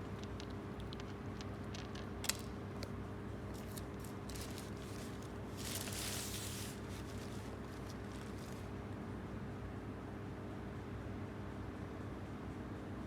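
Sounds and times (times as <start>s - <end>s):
kitten crunching dry food: 0.0s - 8.8s.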